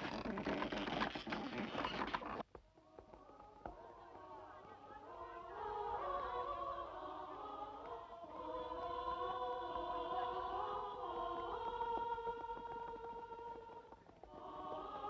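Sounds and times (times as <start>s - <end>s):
choir singing slow chords: 3.2s - 15.0s.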